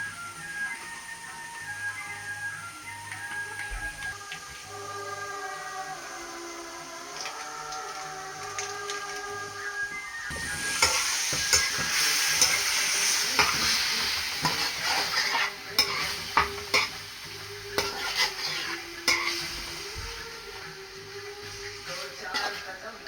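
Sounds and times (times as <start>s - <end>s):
chicken sizzling in oil: 0.0s - 23.0s
utensil tapping and scraping pot: 14.4s - 17.0s, 17.8s - 19.3s.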